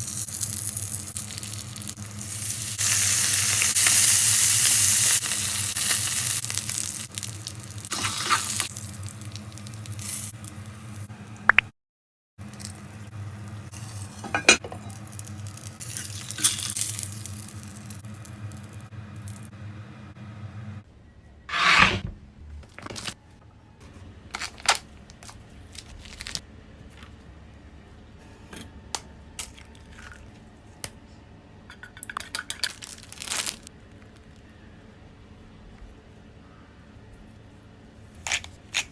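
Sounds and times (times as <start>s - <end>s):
food sizzling in a pan: 0.0s - 10.4s, 13.8s - 18.2s.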